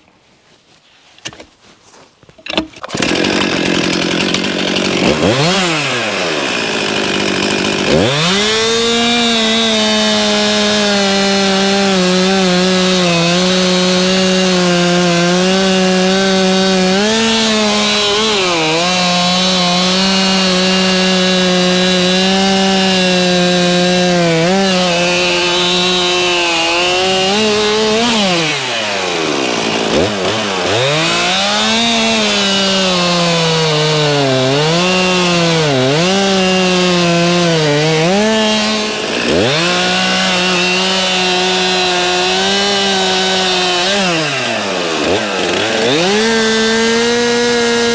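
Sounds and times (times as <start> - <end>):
chainsaw cutting log: 2.4 - 47.9.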